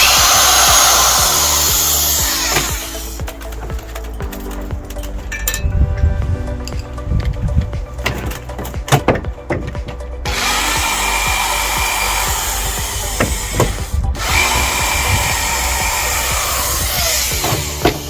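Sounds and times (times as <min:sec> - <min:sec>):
power tool running: 0:00.0 - 0:03.4, 0:10.2 - 0:18.0.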